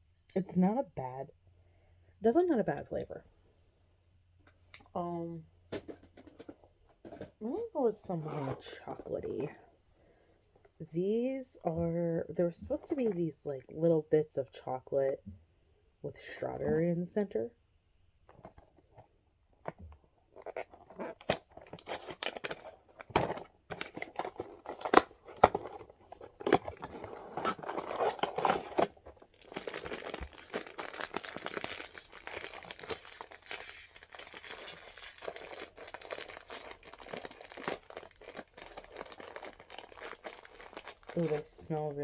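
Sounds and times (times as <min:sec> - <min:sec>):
plastic packet tearing and crinkling: 0:20.3 - 0:42.0.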